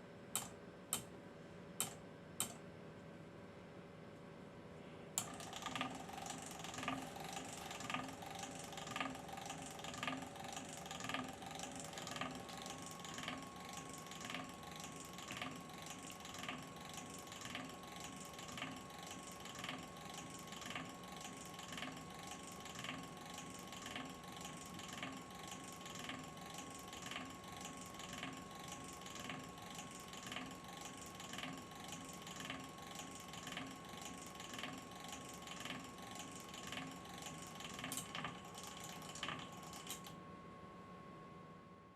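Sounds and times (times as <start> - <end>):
faint steady hum: 0.0 - 41.9
small mechanism clicking: 0.4 - 1.1, 30.1 - 40.2.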